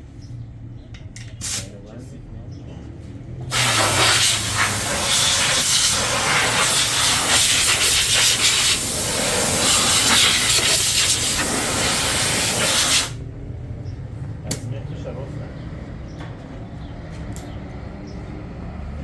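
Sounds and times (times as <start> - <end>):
loud steady hiss: 3.5 - 13.2.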